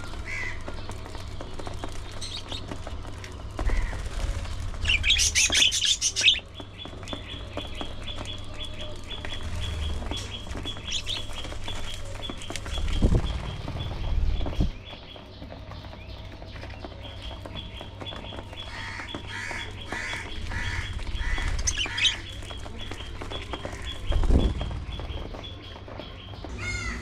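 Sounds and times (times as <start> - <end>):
budgerigars chirping: 4.8 - 6.4, 18.6 - 23.0
low rumble: 6.9 - 27.0.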